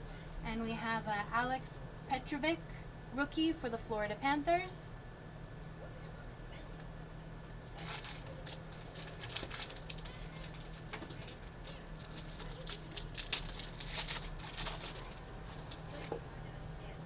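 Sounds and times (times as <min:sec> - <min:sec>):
steady low hum: 0:00.0 - 0:17.0
trading cards rustling and clicking: 0:07.7 - 0:16.2.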